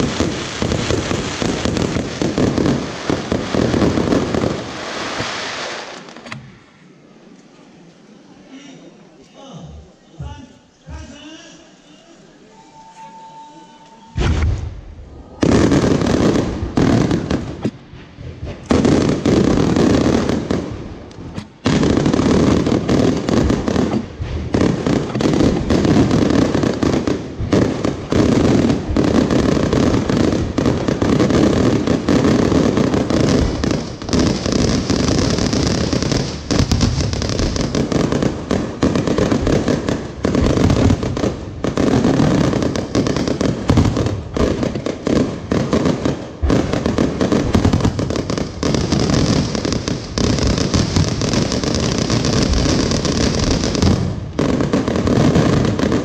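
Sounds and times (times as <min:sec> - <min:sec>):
fireworks bangs and crackling: 0:00.0 - 0:06.7, 0:14.2 - 0:56.0.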